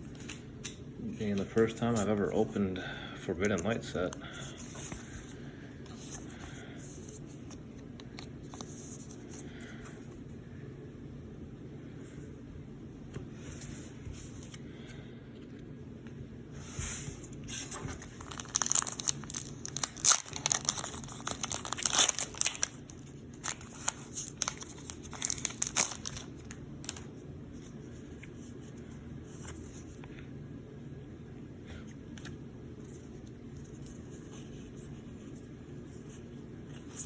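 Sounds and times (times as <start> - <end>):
foil packaging crinkling and tearing: 17.5 - 27.1.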